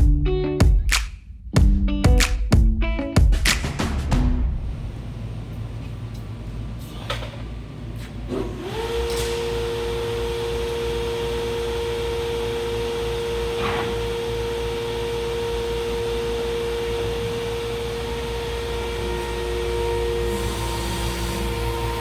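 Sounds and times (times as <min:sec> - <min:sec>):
hydraulic pump whining: 0:08.2 - 0:22.0
motor low hum: 0:08.5 - 0:22.0.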